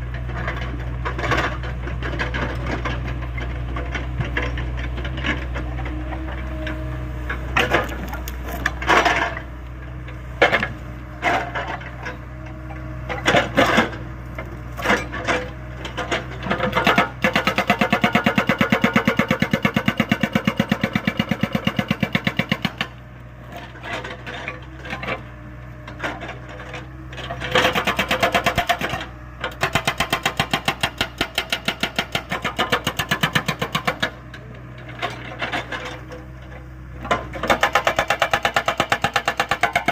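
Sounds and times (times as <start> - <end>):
diesel engine droning: 0.0 - 37.6
hydraulic rock breaker hammering: 14.8 - 23.0, 26.1 - 34.4, 37.0 - 39.9.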